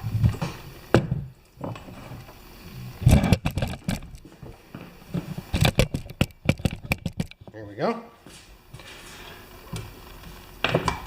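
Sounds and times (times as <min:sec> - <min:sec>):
hands and tools clicking and knocking: 0:03.0 - 0:04.2, 0:05.5 - 0:07.6.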